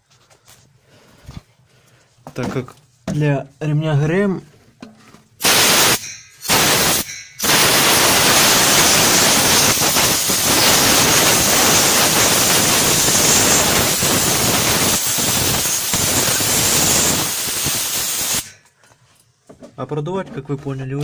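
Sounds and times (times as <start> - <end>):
compressed air blow gun hissing: 5.4 - 18.6.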